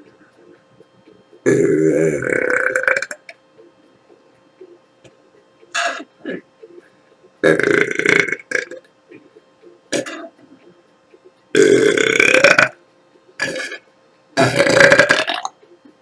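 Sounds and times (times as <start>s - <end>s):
woman belching: 1.5s - 3.2s, 10.0s - 10.3s, 11.6s - 12.8s, 14.4s - 15.5s.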